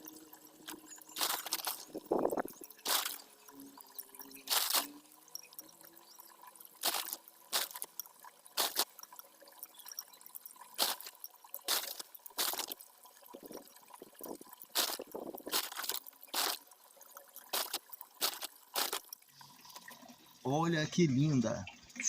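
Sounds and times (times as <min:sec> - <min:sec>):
pebbles clinking into concrete bowl: 0:01.1 - 0:03.3, 0:06.8 - 0:08.0, 0:10.8 - 0:12.8, 0:13.4 - 0:16.6, 0:17.5 - 0:19.1.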